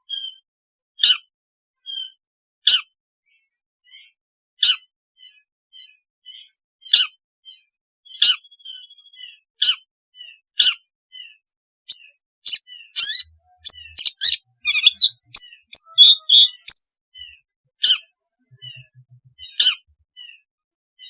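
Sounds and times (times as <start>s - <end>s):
soft bird chirps: 0.0s - 21.0s
shrike harsh calls: 13.0s - 16.9s.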